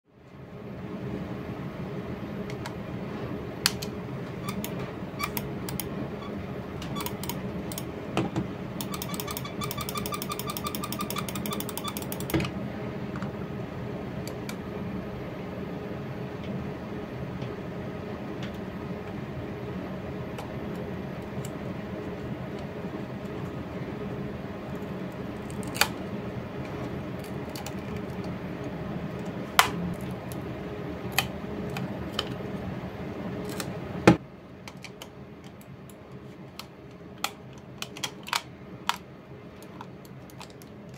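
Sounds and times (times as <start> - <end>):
steady low hum: 0.1 - 40.9
plastic mouse creaking and clicking: 4.4 - 5.9, 6.8 - 7.9, 8.8 - 12.5, 26.8 - 28.3
rapid even ticking: 8.8 - 12.4.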